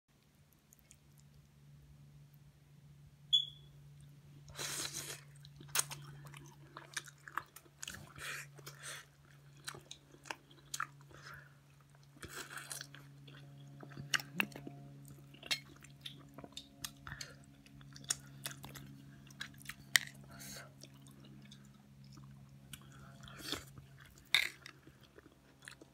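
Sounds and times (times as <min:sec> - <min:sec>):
low hum: 0:00.1 - 0:25.9
person chewing and smacking: 0:00.2 - 0:01.6, 0:04.0 - 0:25.9.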